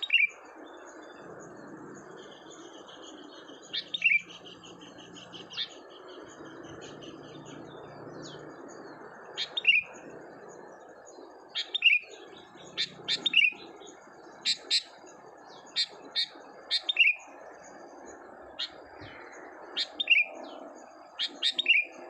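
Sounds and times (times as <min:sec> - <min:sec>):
decoy bird chirps: 0:00.0 - 0:00.4, 0:02.3 - 0:07.7, 0:09.4 - 0:10.0, 0:11.5 - 0:14.9, 0:15.6 - 0:17.4, 0:18.6 - 0:22.0
fast bird twittering: 0:00.0 - 0:22.0.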